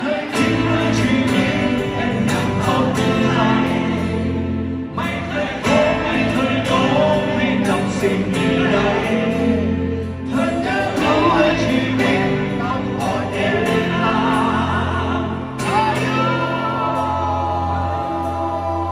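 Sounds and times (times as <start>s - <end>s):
live band playing: 0.0s - 18.9s
person singing: 0.0s - 18.9s.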